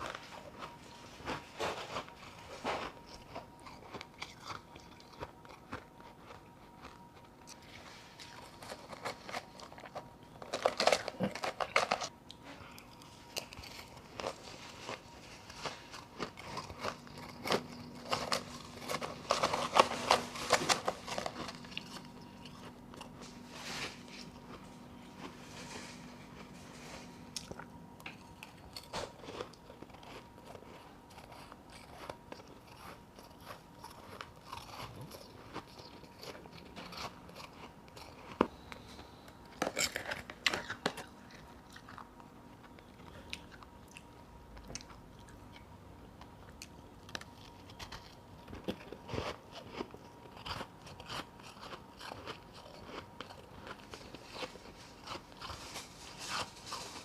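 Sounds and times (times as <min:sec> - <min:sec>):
ice being chewed: 0:00.0 - 0:57.0.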